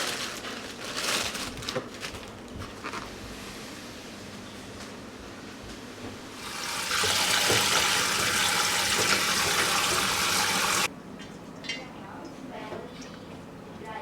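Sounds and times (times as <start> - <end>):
tap water running into sink: 6.4 - 10.9.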